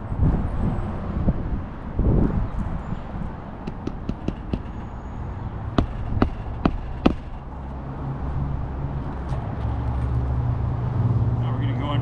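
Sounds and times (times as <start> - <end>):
hammer striking nail: 3.6 - 5.0, 5.8 - 7.5.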